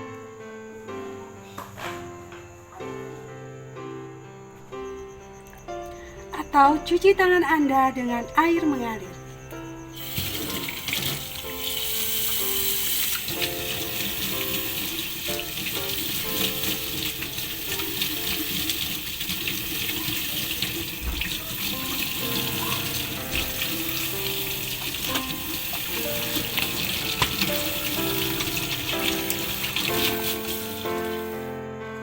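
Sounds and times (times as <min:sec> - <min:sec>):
soft background music: 0:00.0 - 0:32.0
tap running into a sink: 0:10.0 - 0:31.2.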